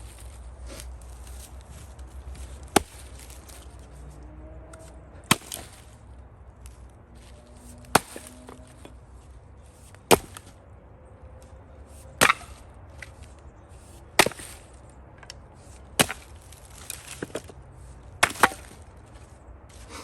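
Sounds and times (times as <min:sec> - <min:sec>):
axe splitting firewood: 0:00.6 - 0:04.0, 0:04.6 - 0:10.6, 0:11.9 - 0:20.0.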